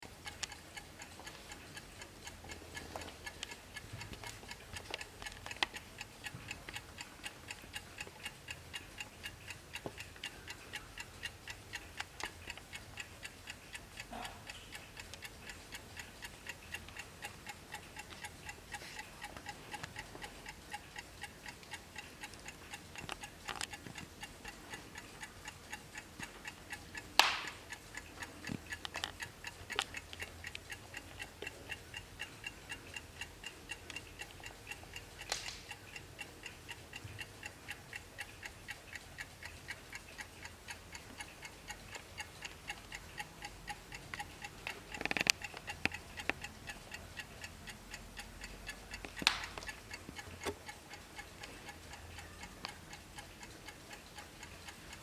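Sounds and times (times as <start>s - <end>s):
wall clock ticking: 0.0s - 55.0s
louder clock clicks: 27.2s - 27.6s.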